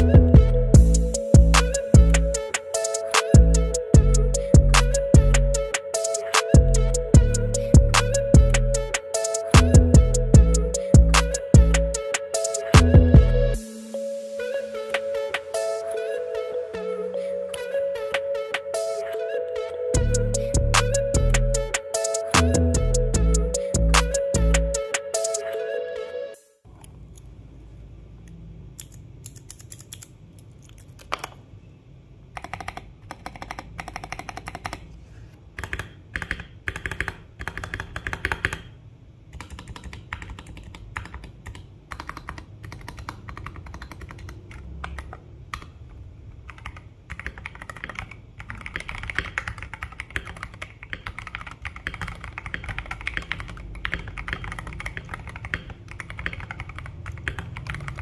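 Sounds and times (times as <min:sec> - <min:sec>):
mechanical keyboard typing: 0:28.8 - 0:31.4, 0:32.4 - 0:34.9, 0:35.6 - 0:38.7, 0:39.3 - 0:45.7, 0:46.4 - 0:58.0.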